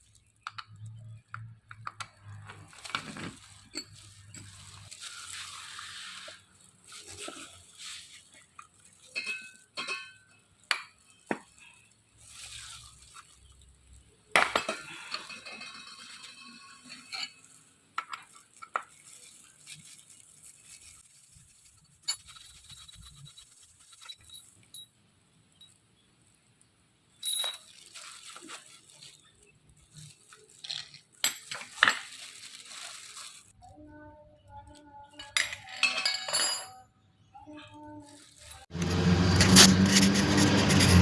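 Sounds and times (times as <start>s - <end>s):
metal tools clinking: 38.7s - 41.0s.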